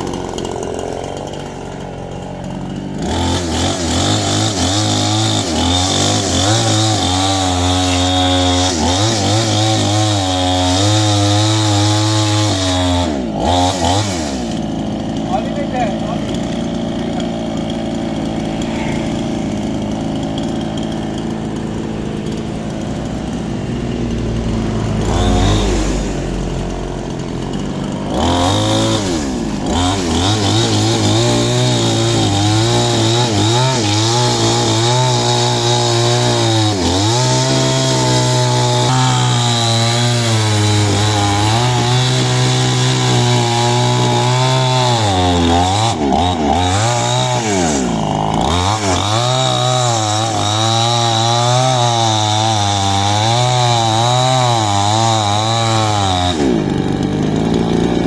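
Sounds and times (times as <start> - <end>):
chainsaw cutting wood: 0.0 - 58.0.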